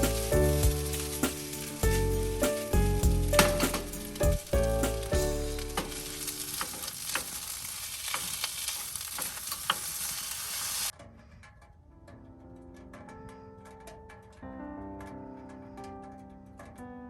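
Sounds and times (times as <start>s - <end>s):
soft background music: 0.0s - 6.7s, 11.6s - 17.0s
sizzling with pops: 0.0s - 16.9s.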